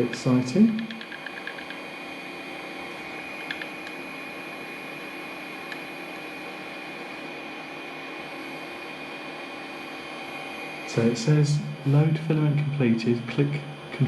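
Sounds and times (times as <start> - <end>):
high whine of extruder drive: 0.0 - 14.0
faint clicks: 3.4 - 4.0.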